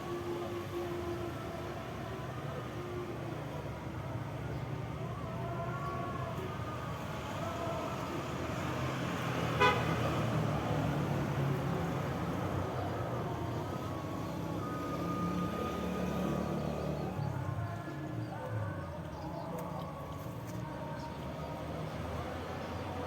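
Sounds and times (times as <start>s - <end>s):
passing road traffic hum: 0.0s - 23.0s
car horn toot: 9.6s - 10.0s.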